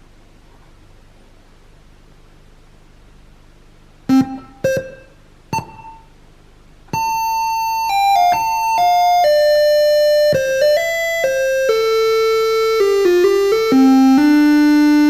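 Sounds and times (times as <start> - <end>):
buzzy electronic tone melody: 4.1 - 6.1, 7.0 - 15.0
short electronic notes: 4.1 - 6.1.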